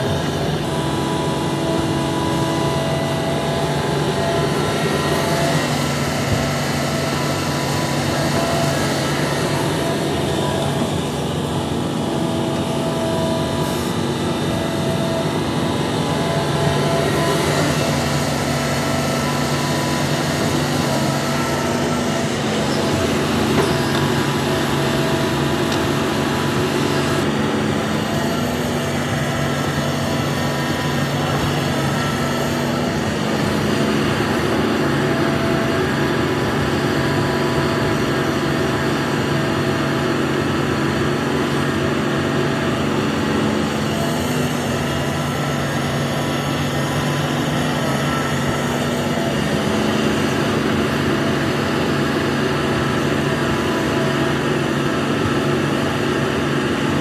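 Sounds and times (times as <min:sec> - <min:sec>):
excavator diesel engine running: 0:00.0 - 0:57.0.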